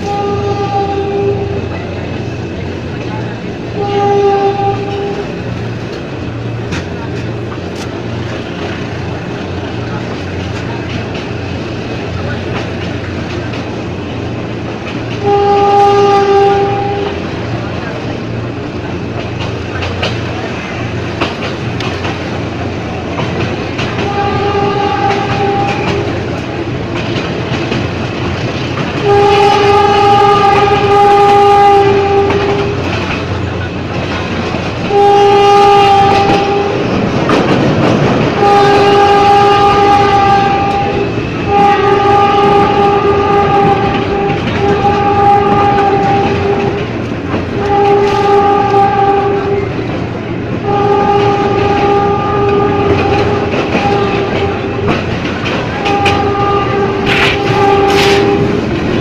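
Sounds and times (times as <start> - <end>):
train horn blasts: 0.0 - 1.8, 3.7 - 5.4, 15.1 - 17.4, 23.9 - 26.2, 29.0 - 33.1, 34.8 - 37.0, 38.3 - 46.9, 47.5 - 49.8, 50.6 - 55.0, 55.6 - 59.0
train running on rails: 0.0 - 59.0.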